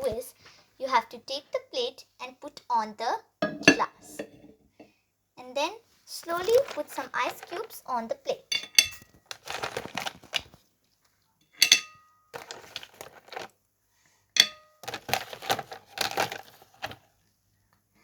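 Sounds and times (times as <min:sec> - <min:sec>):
ice cubes rattling on a plate: 0:06.3 - 0:07.9, 0:08.5 - 0:10.6, 0:11.6 - 0:13.5, 0:14.4 - 0:17.1.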